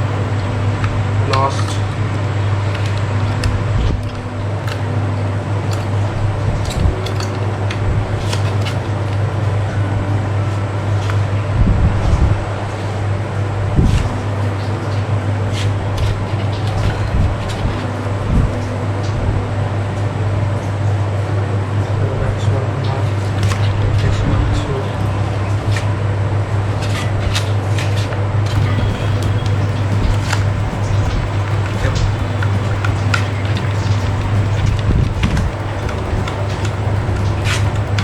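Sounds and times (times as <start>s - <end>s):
machine hum: 0.0s - 22.1s, 28.4s - 38.0s
hand tools clicking on screws: 28.6s - 38.0s.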